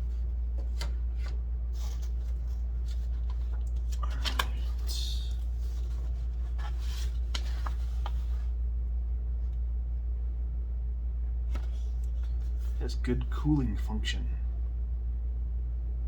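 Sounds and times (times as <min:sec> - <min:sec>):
papery rustle: 0:00.0 - 0:08.6
steady low hum: 0:00.0 - 0:16.0.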